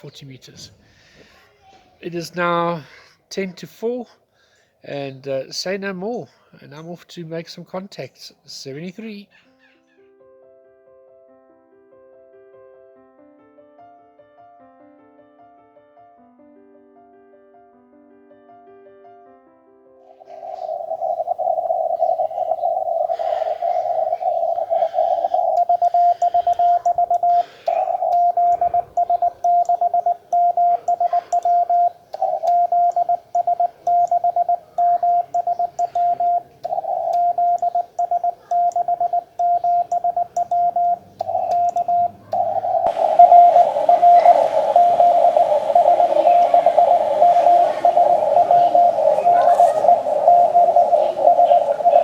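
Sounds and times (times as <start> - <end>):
radio hiss: 20.2 - 34.6, 42.3 - 52.0
morse code tone: 20.5 - 52.0.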